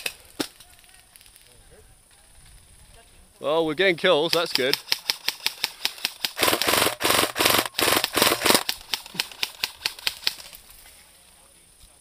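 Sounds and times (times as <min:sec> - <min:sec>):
airsoft guns firing clicking shots: 0:04.3 - 0:10.6.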